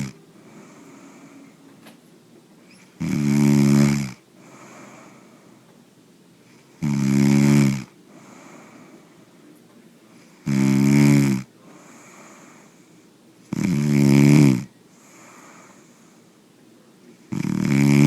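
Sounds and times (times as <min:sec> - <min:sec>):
man snoring: 0:00.0 - 0:01.4, 0:03.0 - 0:05.2, 0:06.8 - 0:08.9, 0:10.4 - 0:12.8, 0:13.5 - 0:16.0, 0:17.3 - 0:18.0
quiet breaths: 0:00.0 - 0:18.0.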